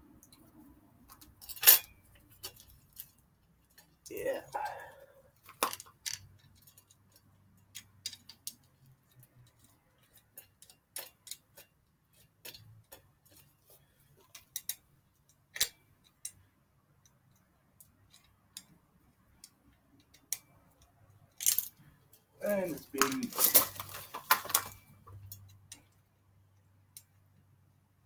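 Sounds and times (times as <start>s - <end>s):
metal bike parts clicking: 1.1s - 4.1s, 5.4s - 13.5s, 14.2s - 16.4s, 23.0s - 25.9s.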